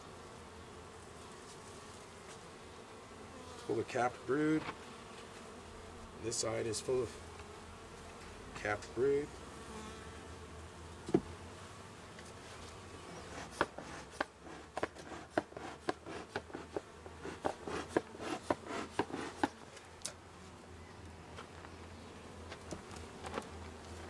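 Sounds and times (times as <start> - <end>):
honeybees buzzing: 0.0 - 24.0
bees zipping past microphone: 9.1 - 10.4, 11.0 - 19.6.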